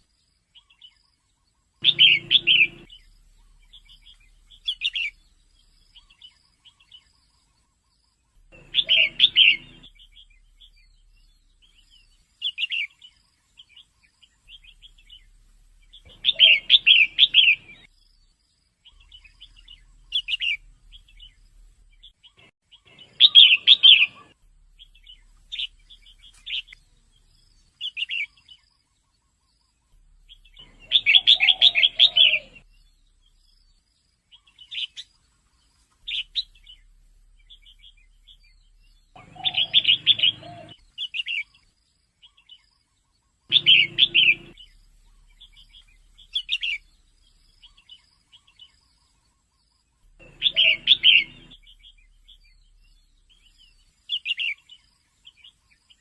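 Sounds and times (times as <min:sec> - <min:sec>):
bird chirps: 0:00.0 - 0:56.0
bird chattering calls: 0:01.8 - 0:04.0, 0:08.5 - 0:10.2, 0:16.0 - 0:17.9, 0:30.6 - 0:32.7, 0:39.1 - 0:41.4, 0:43.5 - 0:46.9, 0:50.2 - 0:52.4.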